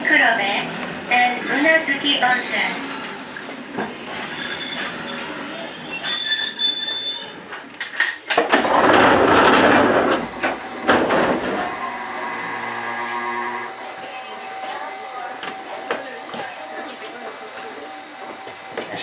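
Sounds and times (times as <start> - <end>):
thin squealing tones: 0.0 - 7.5, 8.4 - 15.1
train rushing noise: 0.0 - 19.0.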